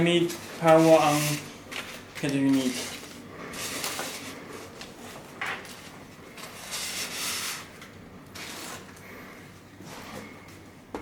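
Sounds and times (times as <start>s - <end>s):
cables rustling and scraping: 0.2s - 9.1s
sharp scrape: 6.6s - 7.7s.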